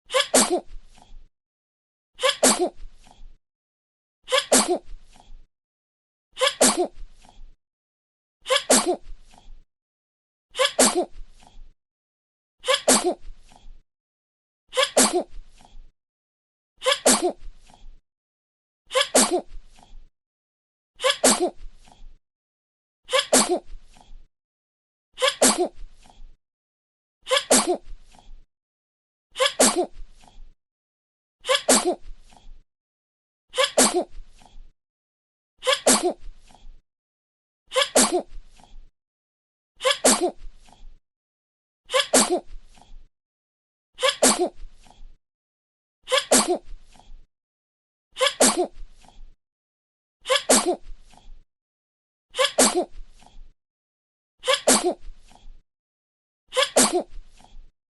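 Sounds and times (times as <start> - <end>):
baby sneezing: 0.1 - 0.6, 2.2 - 2.8, 4.3 - 4.8, 6.4 - 6.9, 8.5 - 9.0, 10.6 - 11.1, 12.6 - 13.2, 14.8 - 15.3, 16.9 - 17.4, 19.0 - 19.5, 21.0 - 21.5, 23.1 - 23.6, 25.2 - 25.7, 27.3 - 27.8, 29.4 - 29.9, 31.5 - 32.0, 33.6 - 34.0, 35.6 - 36.2, 37.7 - 38.3, 39.8 - 40.4, 41.9 - 42.5, 44.0 - 44.6, 46.1 - 46.6, 48.2 - 48.7, 50.3 - 50.8, 52.4 - 52.9, 54.4 - 55.0, 56.5 - 57.1.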